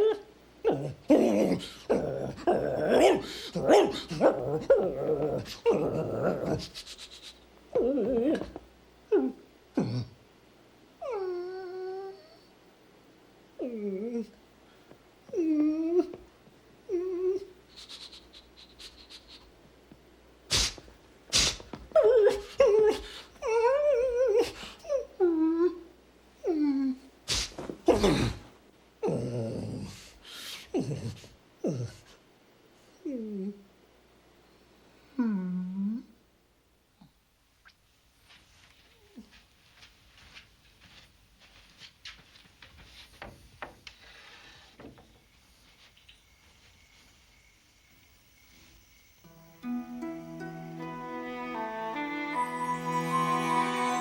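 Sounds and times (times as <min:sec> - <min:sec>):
dog whining and whimpering: 0:00.0 - 0:06.7, 0:07.7 - 0:09.4, 0:11.0 - 0:12.5, 0:13.6 - 0:14.4, 0:15.3 - 0:16.2, 0:16.9 - 0:17.6, 0:21.9 - 0:27.1.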